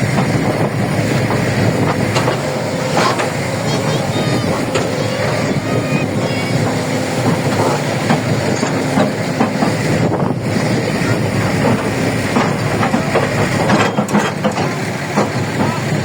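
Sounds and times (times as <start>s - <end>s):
tracked heavy equipment running: 0.0s - 16.0s
metallic clanks and knocks: 6.7s - 16.0s.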